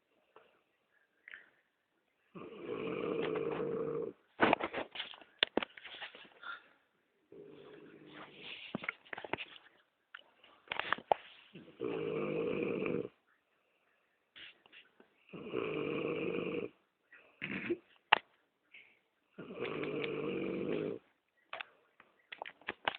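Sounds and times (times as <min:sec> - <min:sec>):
man snoring: 0:02.4 - 0:04.2, 0:11.6 - 0:13.2, 0:15.3 - 0:16.8, 0:19.4 - 0:21.0.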